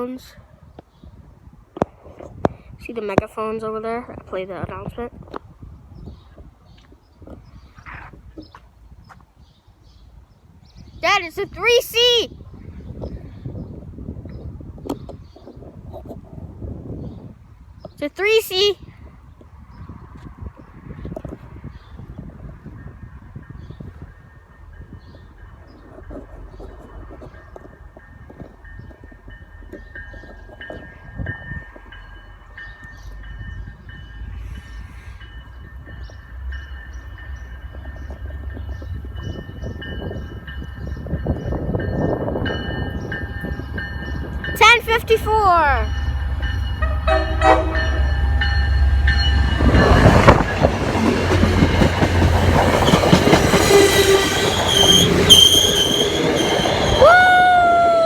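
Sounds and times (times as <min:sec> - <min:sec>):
train rumbling: 0:00.0 - 0:58.0
train bell ringing: 0:27.3 - 0:57.0
train brake squeal: 0:53.6 - 0:57.1.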